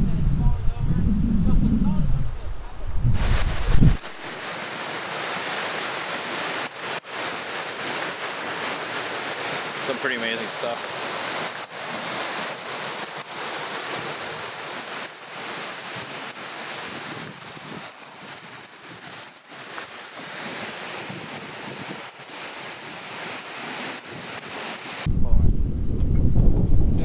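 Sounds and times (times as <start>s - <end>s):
wind buffeting microphone: 0.0s - 4.3s, 24.1s - 27.0s.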